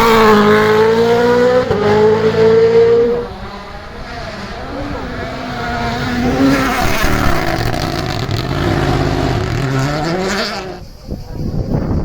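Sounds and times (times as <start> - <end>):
rally car engine revving: 0.0 - 10.8.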